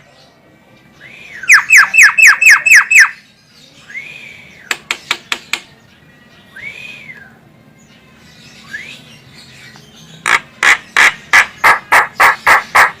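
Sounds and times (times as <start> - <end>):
myna whistling and calling: 1.0 - 3.2, 8.6 - 9.3.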